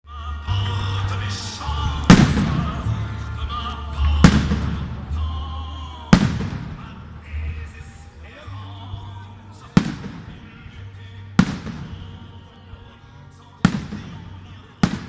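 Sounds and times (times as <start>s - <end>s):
music playing: 0.0s - 15.0s
firework bursts with echo: 2.1s - 2.9s, 6.1s - 7.0s, 13.6s - 15.0s.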